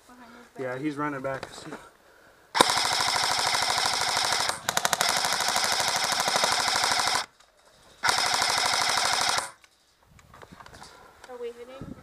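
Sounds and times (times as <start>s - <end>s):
airsoft rifle firing bursts: 2.6s - 7.3s, 8.0s - 9.6s.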